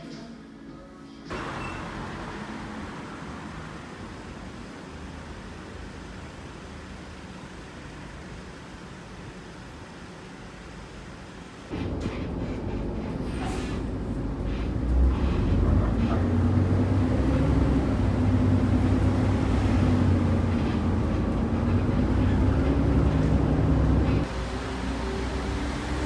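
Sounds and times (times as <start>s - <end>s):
vehicle engine rumbling: 11.7s - 26.0s.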